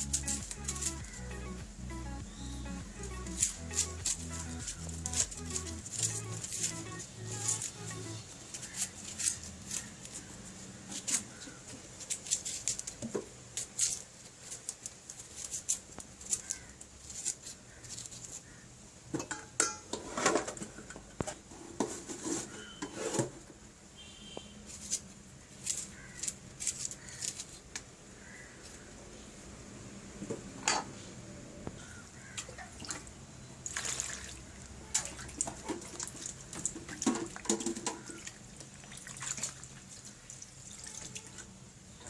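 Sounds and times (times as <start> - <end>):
utensils clinking against pots: 19.2 - 20.5.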